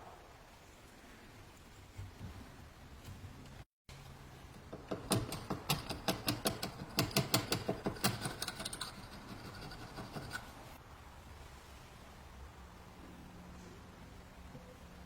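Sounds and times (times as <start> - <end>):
sharp mechanical clicks and taps: 4.5 - 9.0.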